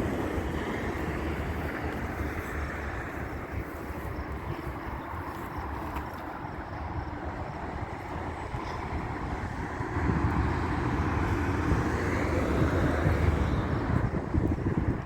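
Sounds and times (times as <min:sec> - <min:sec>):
vehicle passing: 0:08.2 - 0:14.6.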